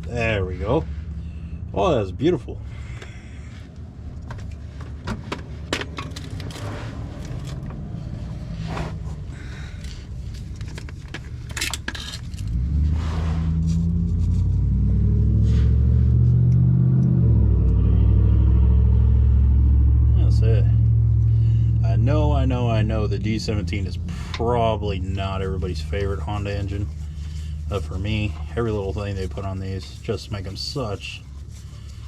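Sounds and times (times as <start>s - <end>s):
machine low rumble: 0.0s - 32.0s
metal tools clinking and scraping: 10.4s - 12.6s.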